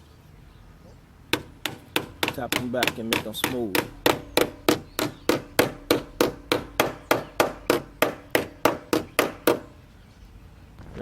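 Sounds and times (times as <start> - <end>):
hammer tapping on metal: 1.3 - 9.8.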